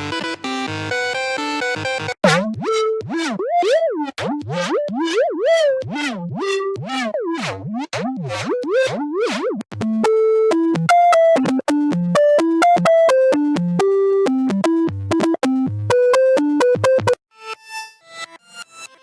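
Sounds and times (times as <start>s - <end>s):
sliding-pitch synth sound: 2.2s - 9.6s
synthesizer bass notes: 2.2s - 10.1s.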